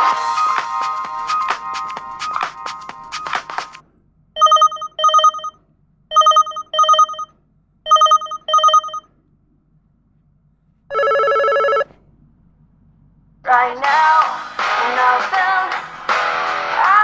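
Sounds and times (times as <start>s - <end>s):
phone ringtone double rings: 4.4s - 7.3s, 7.9s - 9.1s, 10.9s - 11.9s.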